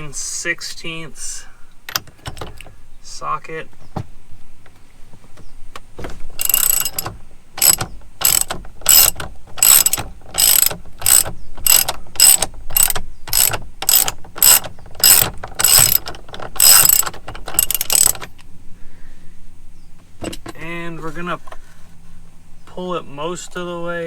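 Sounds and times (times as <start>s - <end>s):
socket ratchet clicking: 6.4s - 18.5s.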